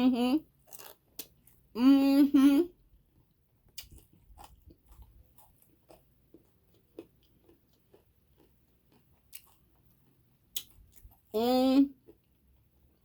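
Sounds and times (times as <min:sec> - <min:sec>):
person chewing: 0:00.6 - 0:01.7, 0:03.6 - 0:11.4, 0:12.0 - 0:13.0.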